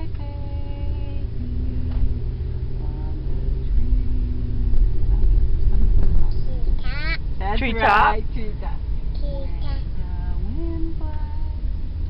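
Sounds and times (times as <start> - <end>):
car engine rumble: 0.0 - 12.0
road noise: 0.0 - 12.0
small child voice sounds: 6.7 - 7.3.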